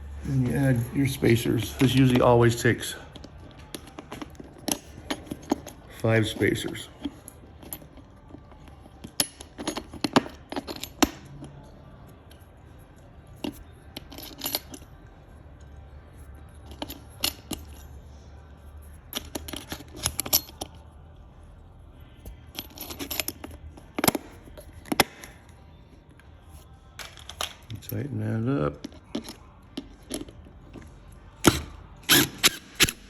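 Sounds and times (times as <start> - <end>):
latch hardware clicking and clinking: 0.3 - 11.6, 22.6 - 25.4, 26.9 - 27.9.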